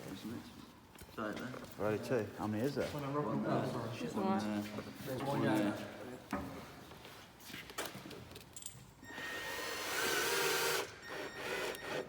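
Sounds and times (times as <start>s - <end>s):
cordless drill running: 9.1s - 12.0s.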